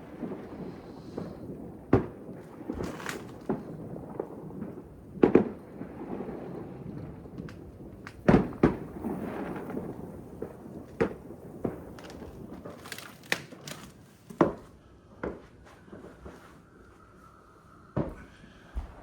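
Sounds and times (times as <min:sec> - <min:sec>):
fireworks crackling: 0:00.0 - 0:14.6
fireworks bangs: 0:00.0 - 0:14.7.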